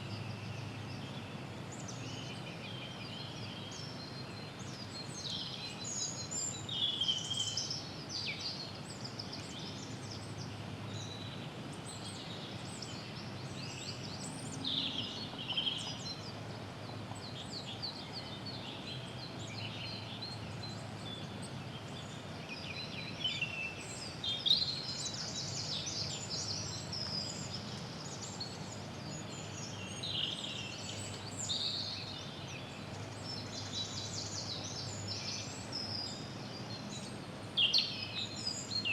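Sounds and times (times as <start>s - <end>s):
low background hiss: 0.0s - 38.9s
songbirds singing: 0.0s - 38.9s.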